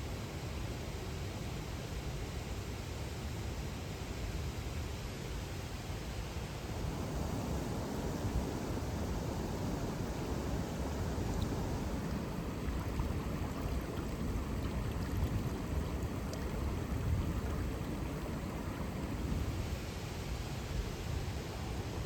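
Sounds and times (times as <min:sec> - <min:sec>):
waterfall and river rushing: 0:06.7 - 0:17.0.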